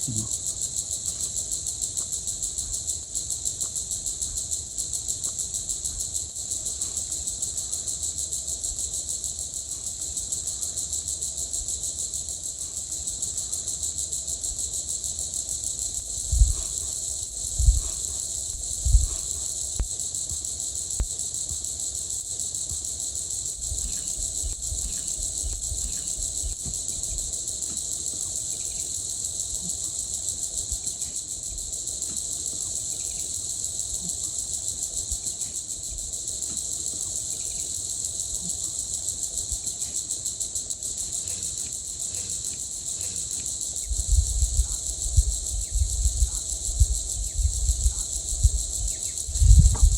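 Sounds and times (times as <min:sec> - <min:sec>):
insects chirping at night: 0:00.0 - 0:49.9
loud dull thumps: 0:49.3 - 0:49.9.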